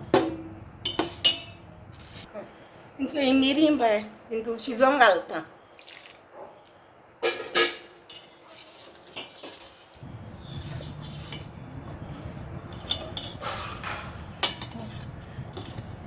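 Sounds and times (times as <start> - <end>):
metal spoon scraping a pot: 0.8 - 2.3, 7.2 - 16.0
low steady hum: 10.0 - 16.0.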